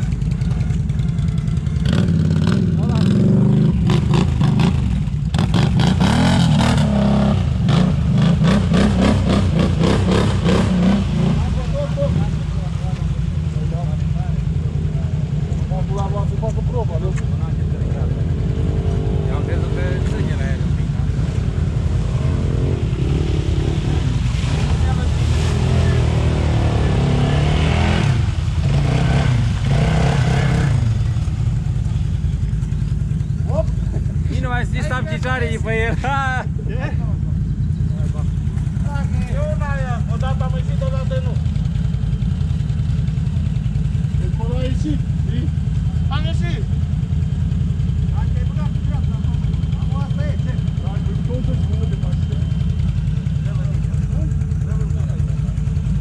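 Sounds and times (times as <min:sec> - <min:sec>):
atv engine revving: 0:00.0 - 0:36.2.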